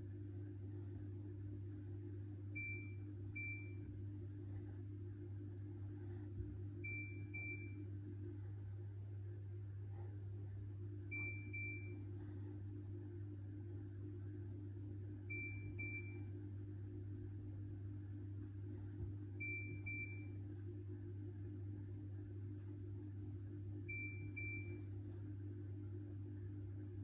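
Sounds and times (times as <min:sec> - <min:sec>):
steady low hum: 0:00.0 - 0:27.0
washing machine double beep: 0:02.5 - 0:03.9, 0:06.8 - 0:07.9, 0:11.1 - 0:12.1, 0:15.3 - 0:16.3, 0:19.4 - 0:20.4, 0:23.9 - 0:24.9.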